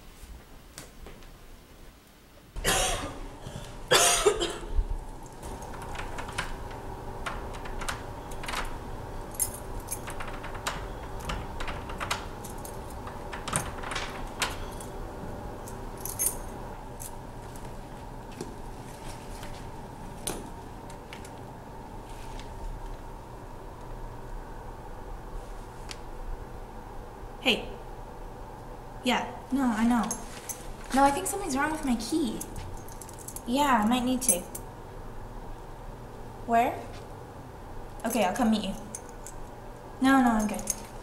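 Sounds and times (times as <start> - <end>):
faint steady hum: 0.0 - 41.0
key rattling in door lock: 5.2 - 15.0, 15.6 - 17.2, 30.0 - 34.6, 38.7 - 39.5, 40.3 - 41.0
keys jangling: 5.2 - 15.0, 15.6 - 17.2, 30.0 - 34.6, 38.8 - 39.5, 40.3 - 41.0.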